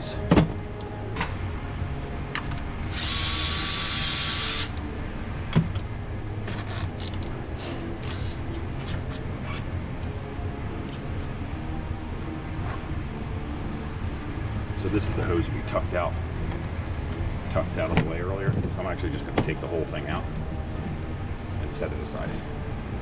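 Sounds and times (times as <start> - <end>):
steady low hum: 0.0 - 23.0
handheld power tool running: 2.9 - 4.8.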